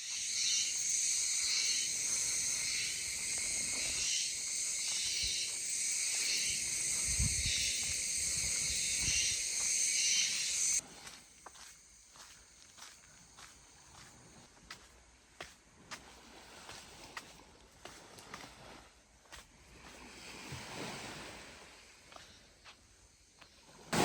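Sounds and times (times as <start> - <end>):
high-pitched insect chorus: 0.0 - 10.8.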